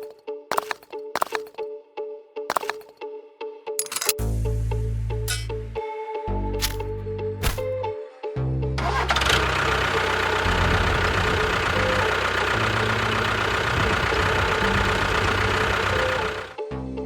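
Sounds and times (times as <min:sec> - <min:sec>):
tractor engine running: 0:00.0 - 0:01.6, 0:02.5 - 0:02.9, 0:05.3 - 0:05.7, 0:06.6 - 0:07.7, 0:08.8 - 0:16.6.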